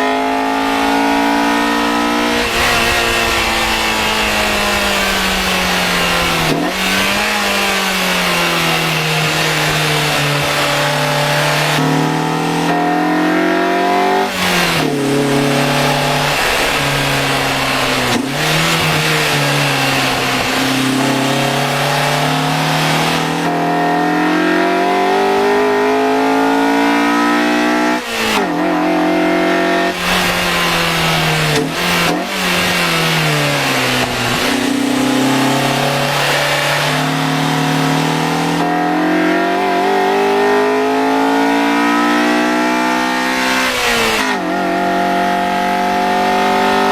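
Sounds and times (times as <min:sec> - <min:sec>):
car engine revving: 0:00.0 - 0:46.9.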